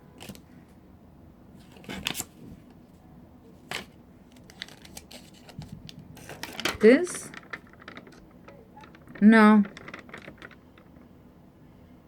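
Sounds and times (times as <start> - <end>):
packaging rustling: 3.7 - 10.9
packaging crinkling: 4.3 - 10.8.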